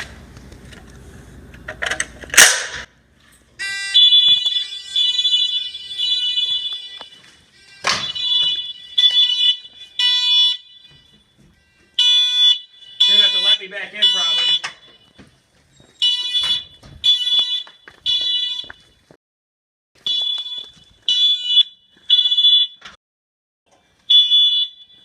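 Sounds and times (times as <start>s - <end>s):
fire alarm horn blasts: 3.6s - 15.3s, 16.0s - 19.1s, 20.0s - 23.0s, 24.1s - 25.0s.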